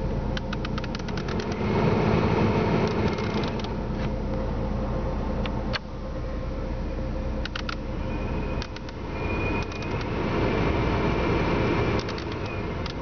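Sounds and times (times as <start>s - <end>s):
climate control blowing hum: 0.0s - 13.0s
quick clicks: 0.4s - 1.6s, 2.8s - 3.8s, 7.4s - 7.8s, 8.6s - 9.0s, 9.6s - 10.1s, 12.0s - 13.0s.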